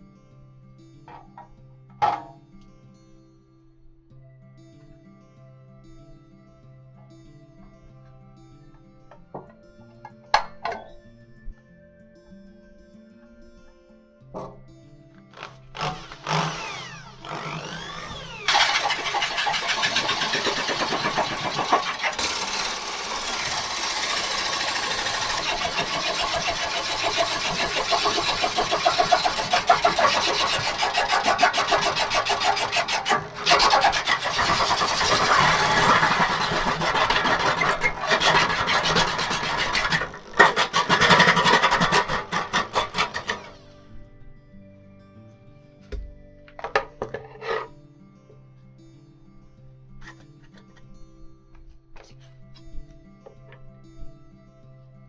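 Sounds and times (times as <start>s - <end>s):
electric power tool pulsing: 15.4s - 43.8s.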